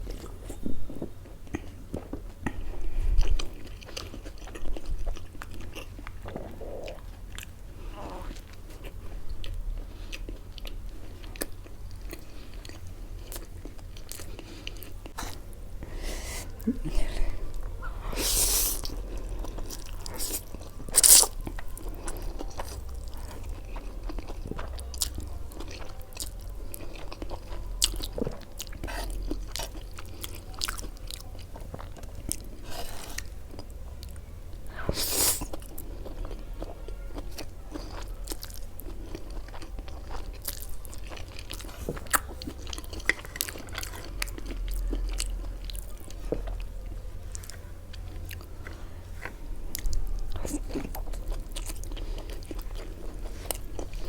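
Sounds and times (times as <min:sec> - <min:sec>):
crunchy chewing: 0:00.0 - 0:54.0
wet mouth sounds: 0:02.4 - 0:08.6, 0:14.1 - 0:23.0.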